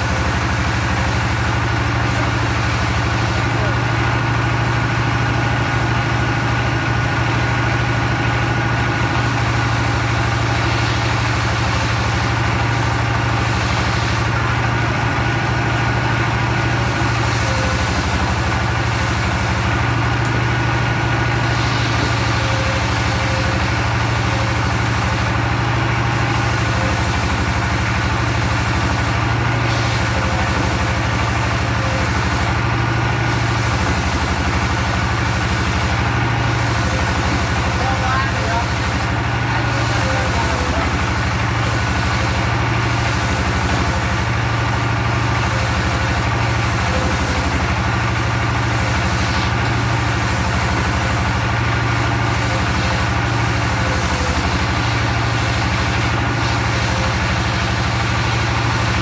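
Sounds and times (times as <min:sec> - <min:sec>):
sawmill engine humming: 0:00.0 - 0:59.0.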